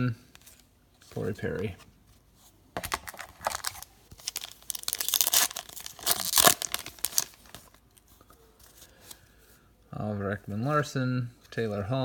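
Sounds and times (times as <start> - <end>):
foil wrapper tearing and crinkling: 2.8 - 8.0.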